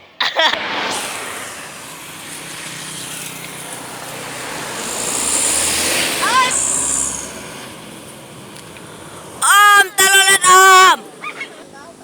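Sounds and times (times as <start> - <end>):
vehicle passing by: 0.6 - 9.4.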